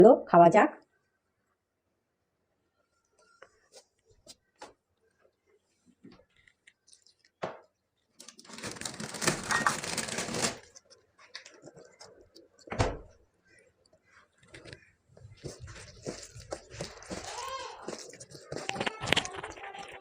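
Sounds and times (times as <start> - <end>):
plastic packaging rustling: 8.1 - 12.7, 14.0 - 20.0.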